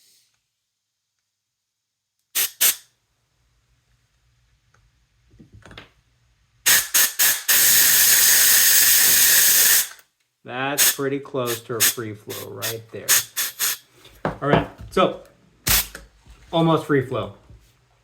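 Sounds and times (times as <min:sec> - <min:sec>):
regulator releasing air: 0:10.8 - 0:13.8.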